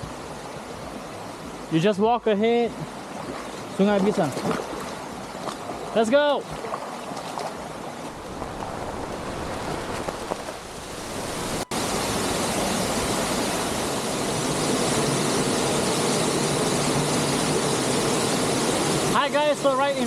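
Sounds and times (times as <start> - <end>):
waterfall and river rushing: 6.6 - 20.0.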